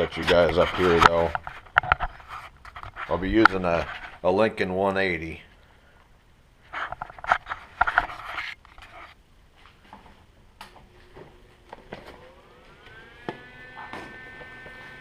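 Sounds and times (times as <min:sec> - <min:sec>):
welder fan whine and hum: 0:10.6 - 0:15.0.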